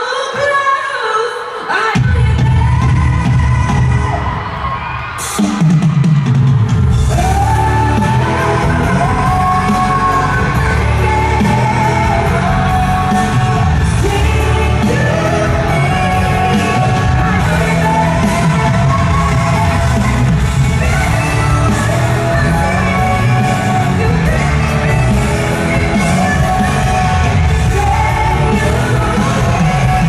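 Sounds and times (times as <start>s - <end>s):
live pop band playing: 0.0s - 30.0s.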